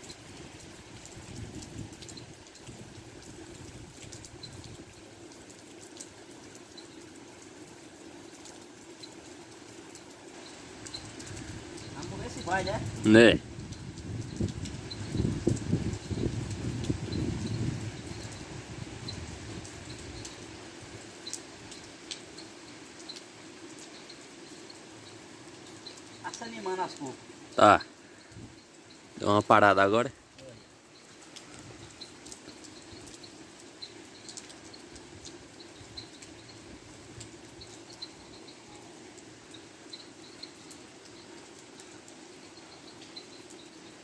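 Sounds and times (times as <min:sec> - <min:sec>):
light crackles and ticks: 0:00.0 - 0:18.5, 0:19.2 - 0:44.0
steady rain: 0:00.0 - 0:44.0.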